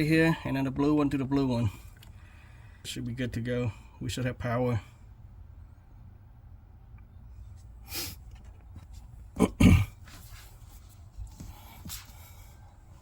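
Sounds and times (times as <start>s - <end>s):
low steady hum: 0.0s - 13.0s
man sneezing: 9.4s - 10.1s.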